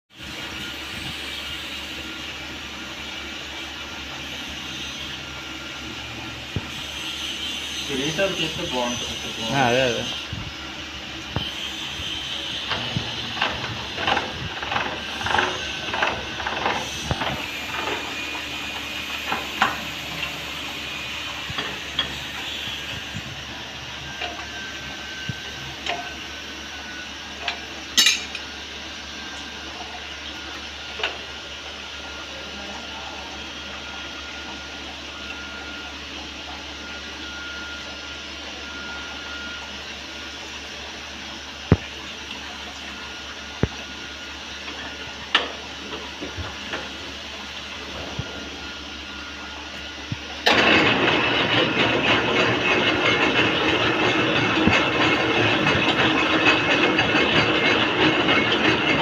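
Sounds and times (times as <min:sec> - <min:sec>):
metal tools clinking: 0:28.0 - 0:28.4.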